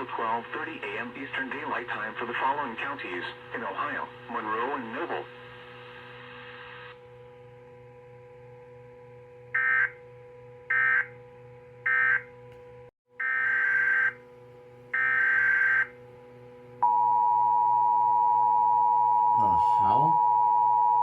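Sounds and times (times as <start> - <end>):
two-tone attention signal: 16.8 - 21.0.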